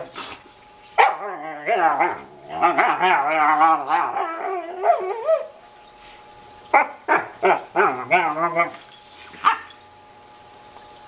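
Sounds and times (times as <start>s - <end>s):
dog warbling whine-howl: 1.0s - 5.6s.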